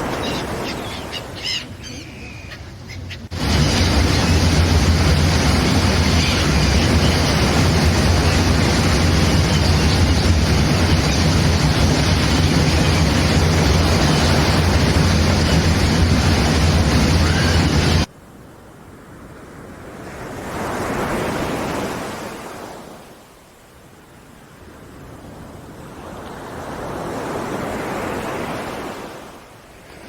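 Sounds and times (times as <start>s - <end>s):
sea waves rushing: 0.0s - 18.1s, 19.1s - 23.2s, 24.6s - 30.0s
wind rumbling on microphone: 0.0s - 18.1s.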